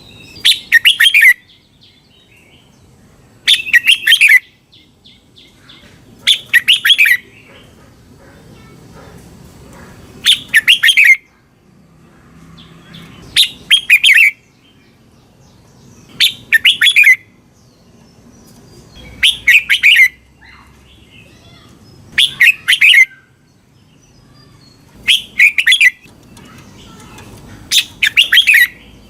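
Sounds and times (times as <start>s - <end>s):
bird singing warbled whistles: 0.4s - 1.4s, 3.5s - 4.5s, 6.3s - 7.2s, 10.3s - 11.2s, 13.4s - 14.4s, 16.1s - 17.3s, 19.0s - 20.2s, 22.1s - 23.3s, 25.0s - 26.1s, 27.8s - 28.8s.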